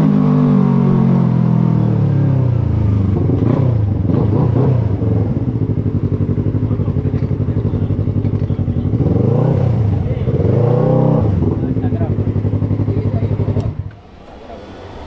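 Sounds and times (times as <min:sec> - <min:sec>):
motorcycle engine idling: 0:04.9 - 0:14.5.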